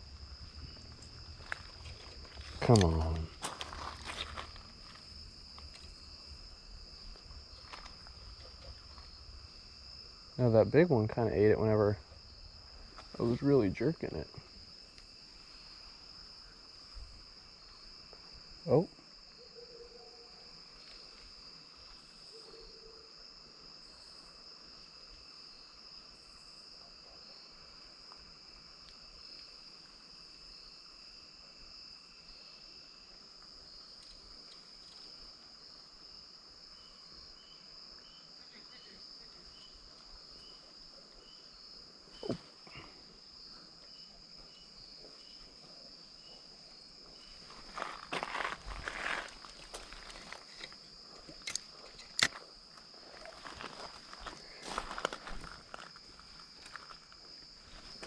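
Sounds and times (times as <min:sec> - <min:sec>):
insect chirps: 0:00.0 - 0:58.0
insect high-pitched drone: 0:00.0 - 0:58.0
rustling footsteps: 0:00.1 - 0:06.0, 0:47.4 - 0:58.0.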